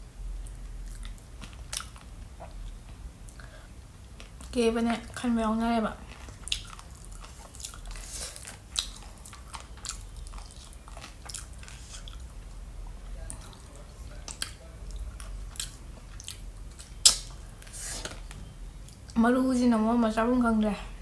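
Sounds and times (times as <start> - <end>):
person chewing crunchy food: 0.5 - 4.5, 6.0 - 19.2.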